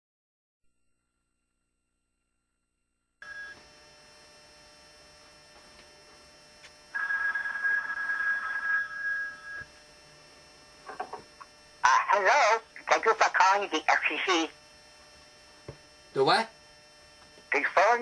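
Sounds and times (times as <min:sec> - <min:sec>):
telephone ringing: 0:06.9 - 0:09.7.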